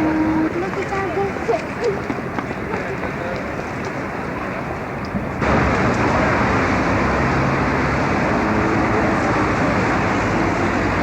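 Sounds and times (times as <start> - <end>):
motor vehicle engine hum: 5.2 - 11.0.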